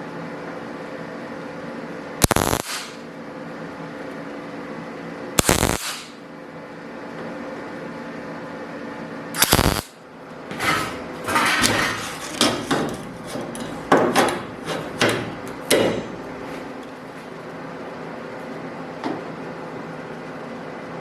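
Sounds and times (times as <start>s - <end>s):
crackling welding arc bursts: 2.2s - 3.0s, 5.4s - 6.2s, 9.4s - 10.0s.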